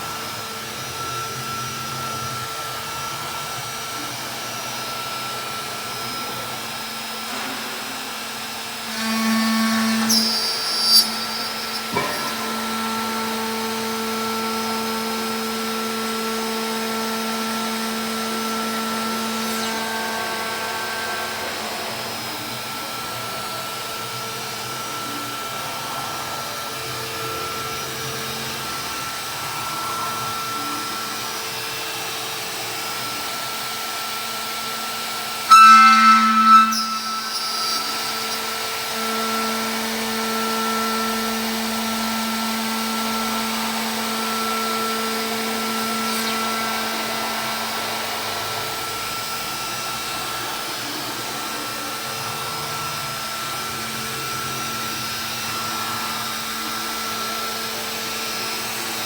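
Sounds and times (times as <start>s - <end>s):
milling machine whine: 0.0s - 59.0s
high machine squeal: 8.1s - 26.1s, 34.5s - 53.1s.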